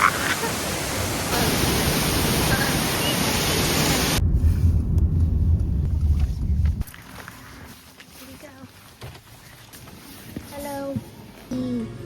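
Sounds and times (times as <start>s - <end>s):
rushing water roar: 0.0s - 4.3s
wind buffeting the microphone: 4.1s - 6.9s.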